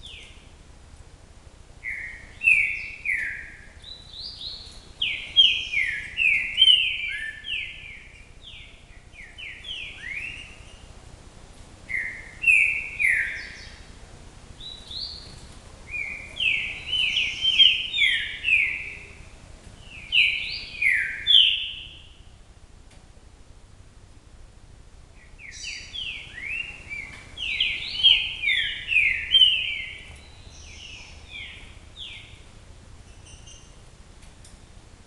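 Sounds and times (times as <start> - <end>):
songbird whistling song: 0.0 - 0.5, 1.8 - 10.9, 11.9 - 13.9, 14.6 - 22.3, 25.2 - 33.9.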